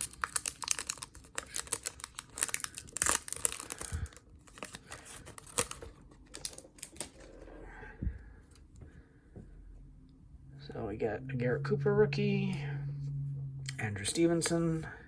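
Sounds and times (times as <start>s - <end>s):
foil pack tearing: 0.0s - 7.2s
cards clicking and crinkling: 0.0s - 7.4s.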